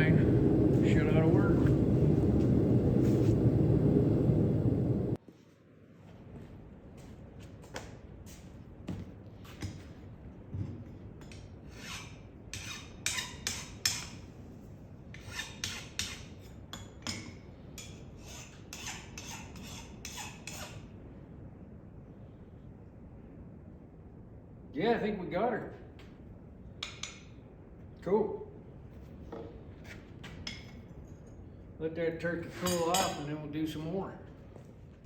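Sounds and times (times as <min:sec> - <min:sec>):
file scraping on steel: 0:11.7 - 0:14.2, 0:15.1 - 0:16.5, 0:17.8 - 0:20.8.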